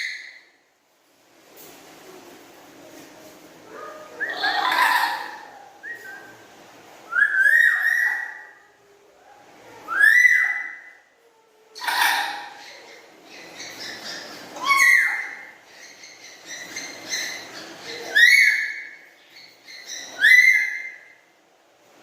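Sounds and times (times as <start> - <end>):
parrot whistled calls: 4.2 - 6.4, 7.0 - 8.5, 9.8 - 11.0, 13.6 - 21.2.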